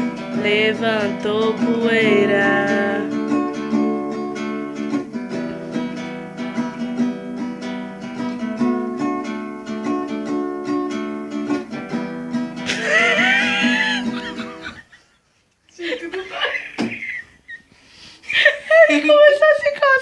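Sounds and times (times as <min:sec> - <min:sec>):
strummed acoustic guitar: 0:00.0 - 0:14.8.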